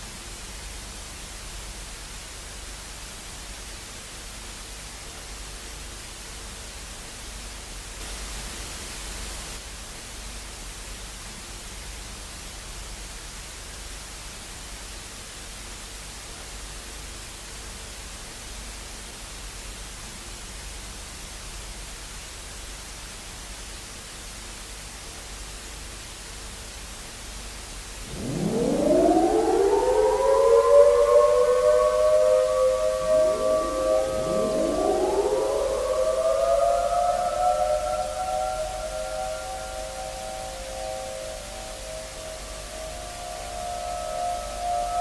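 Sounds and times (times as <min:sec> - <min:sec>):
static hiss: 0:07.8 - 0:11.4
siren winding up: 0:28.0 - 0:45.0.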